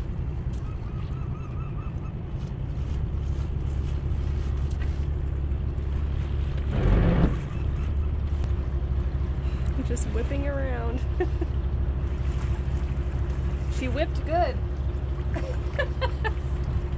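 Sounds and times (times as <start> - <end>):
boat engine humming: 0.0 - 16.9.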